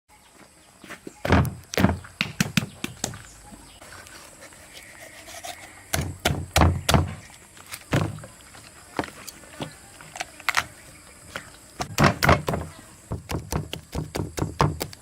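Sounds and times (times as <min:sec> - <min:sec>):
irregular knocks and thumps: 0:01.2 - 0:03.2, 0:06.0 - 0:07.3, 0:07.9 - 0:08.4, 0:11.8 - 0:15.0.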